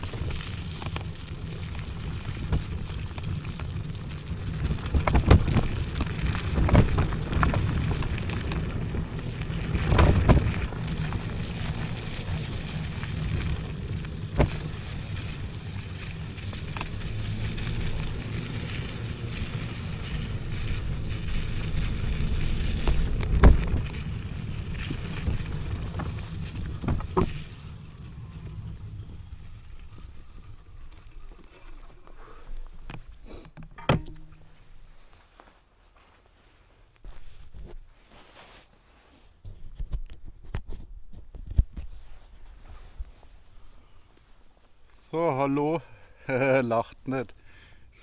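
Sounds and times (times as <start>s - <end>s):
scooter tyres rumbling: 0.0s - 35.6s
scooter knocking over bumps: 4.6s - 15.4s, 22.2s - 24.1s, 24.8s - 27.7s, 32.9s - 34.6s.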